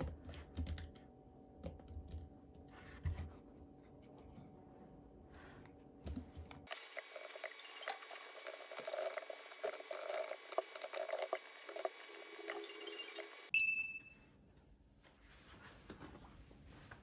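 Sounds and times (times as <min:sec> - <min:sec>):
bright ding ringing out: 0:13.5 - 0:14.3.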